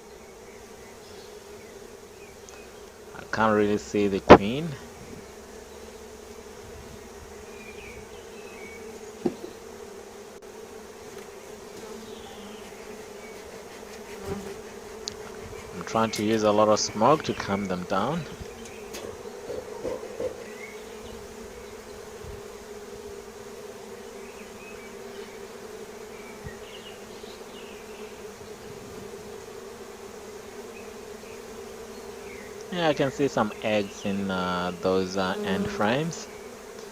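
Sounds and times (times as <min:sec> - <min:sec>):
honeybees buzzing: 0:00.0 - 0:36.9
brief knock: 0:18.9 - 0:20.4.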